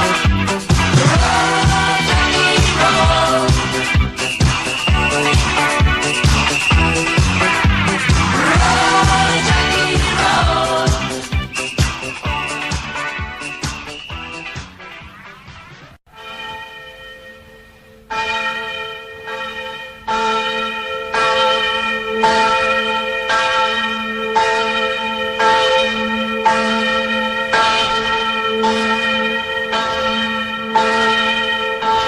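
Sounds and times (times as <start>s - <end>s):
church bell tolling: 0.0s - 13.5s, 16.1s - 32.0s.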